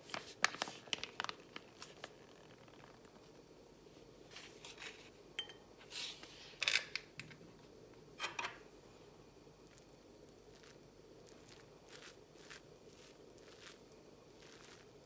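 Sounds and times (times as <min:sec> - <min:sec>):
kitchenware clinking: 0:05.4 - 0:05.7.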